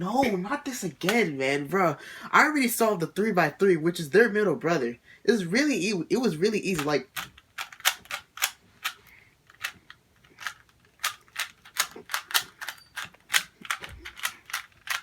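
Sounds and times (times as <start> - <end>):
puzzle cube clicking: 6.7 - 15.0.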